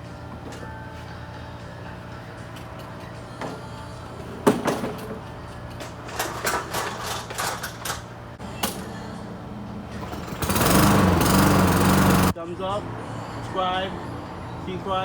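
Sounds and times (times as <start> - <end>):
knocks and clatter of handling: 4.4 - 8.1.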